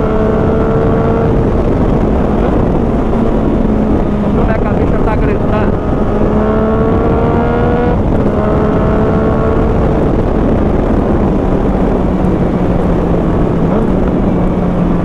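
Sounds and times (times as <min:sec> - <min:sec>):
motorcycle engine accelerating: 0:00.0 - 0:15.0.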